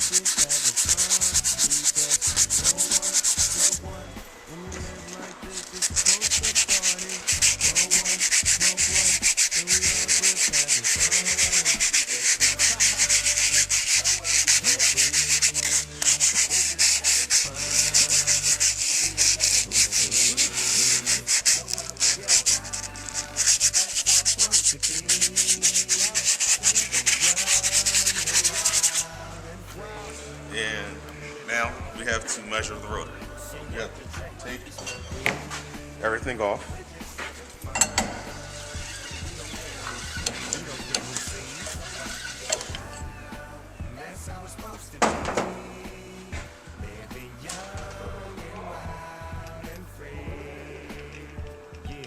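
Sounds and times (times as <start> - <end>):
sandpaper rasping on metal: 0.0 - 29.1, 34.4 - 43.6, 44.6 - 46.4.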